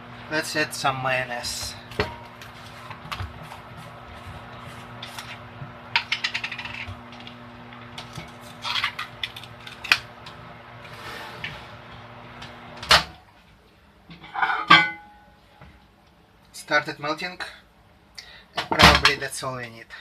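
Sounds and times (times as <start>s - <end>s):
microwave oven humming: 0.0s - 13.5s.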